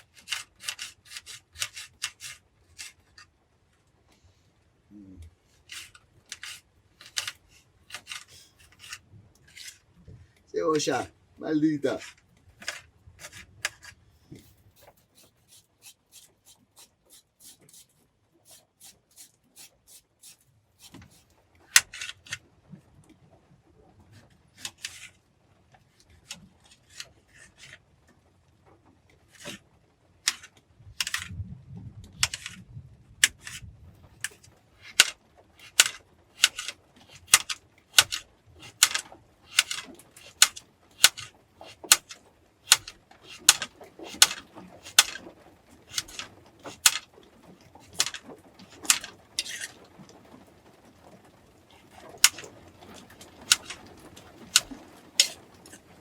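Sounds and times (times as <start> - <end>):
knife slicing onion on board: 0.0 - 3.2, 5.7 - 9.7, 11.9 - 22.3, 32.2 - 32.6, 33.2 - 33.6, 34.2 - 45.2, 45.9 - 47.1, 47.8 - 49.7, 51.9 - 53.8, 54.4 - 55.8.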